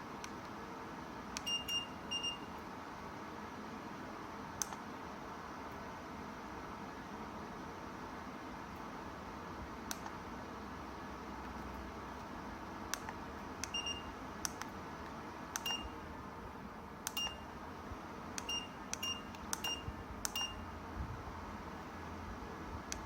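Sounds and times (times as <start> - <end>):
short high beeps: 1.5 - 2.5.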